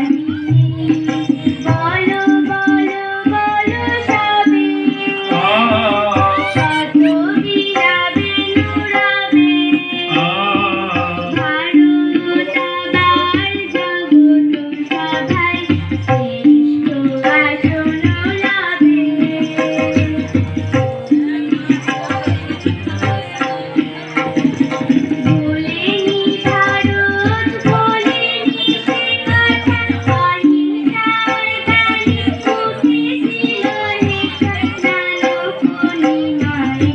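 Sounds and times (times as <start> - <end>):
tabla drum rhythm: 0.0 - 36.9
woman singing: 0.0 - 36.9
sustained accompanying tones: 5.3 - 7.7.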